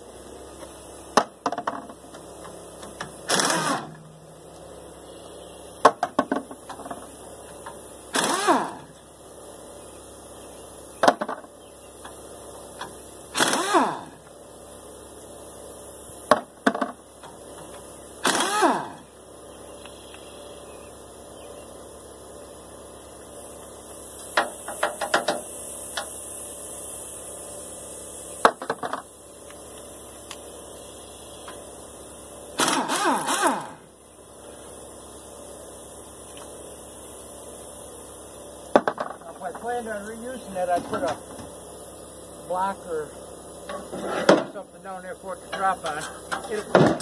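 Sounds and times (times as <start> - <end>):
power tool spinning: 3.2 - 4.0, 8.1 - 8.9, 13.3 - 14.2, 18.2 - 19.0, 32.6 - 33.8.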